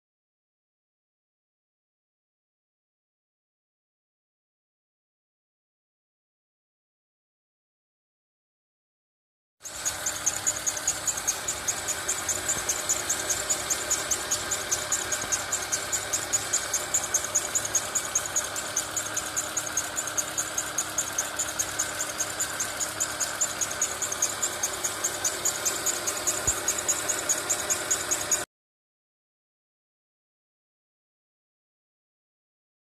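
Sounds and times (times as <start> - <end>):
car engine running: 9.6 - 28.4
regular sharp engine ticking: 9.6 - 28.5.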